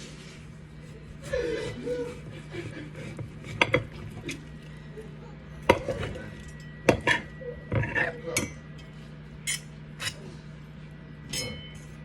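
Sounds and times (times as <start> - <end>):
utensils and dishes clattering: 5.6 - 10.3, 11.3 - 12.0.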